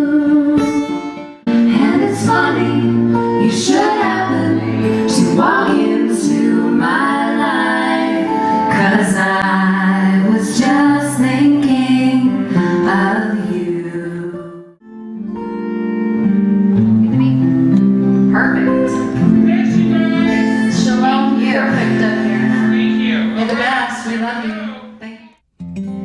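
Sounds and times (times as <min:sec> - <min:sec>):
acoustic guitar: 0:00.0 - 0:26.0
women singing in harmony: 0:01.6 - 0:14.7, 0:19.7 - 0:22.6.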